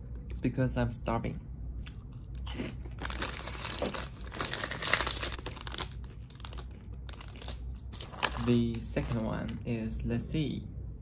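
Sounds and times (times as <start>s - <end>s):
plastic snack packaging crinkling: 2.4s - 9.6s.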